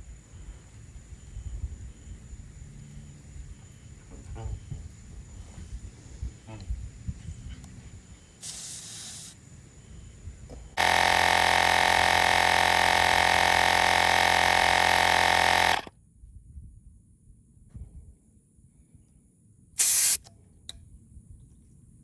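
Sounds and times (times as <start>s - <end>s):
short hiss: 8.4s - 9.4s, 19.8s - 20.3s
tire inflator compressor running: 8.4s - 9.4s, 10.7s - 15.9s.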